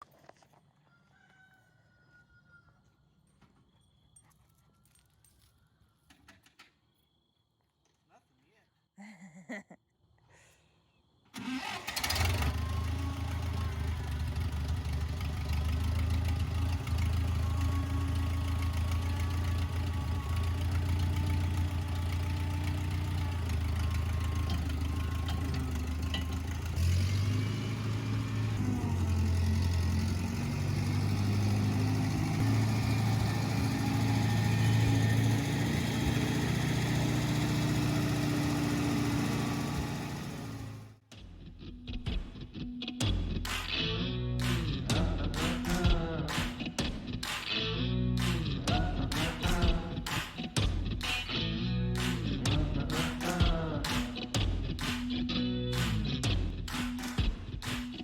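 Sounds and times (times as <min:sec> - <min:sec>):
small gasoline engine running: 0:11.4 - 0:41.0.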